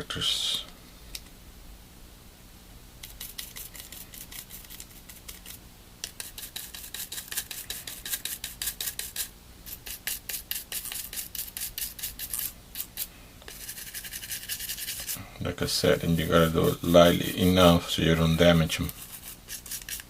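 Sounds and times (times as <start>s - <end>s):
toothbrush scrubbing: 3.0s - 15.2s, 15.9s - 17.4s, 18.5s - 20.0s.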